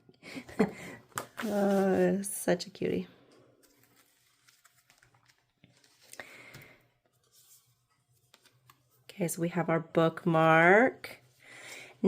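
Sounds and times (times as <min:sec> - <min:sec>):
paper handling clicks and rustle: 0:03.6 - 0:09.0.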